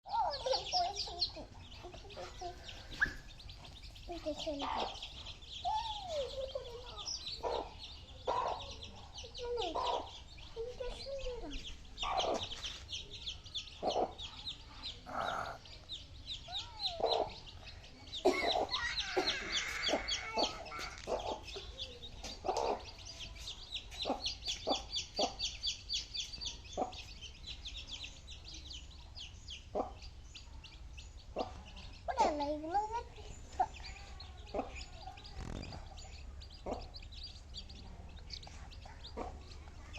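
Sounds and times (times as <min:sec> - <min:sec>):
chicks peeping: 0:00.1 - 0:39.9.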